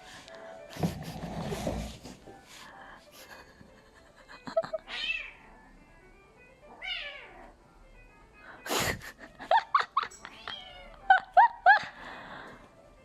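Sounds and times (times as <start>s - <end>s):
cat yowling meows: 4.9s - 5.4s, 6.8s - 7.4s.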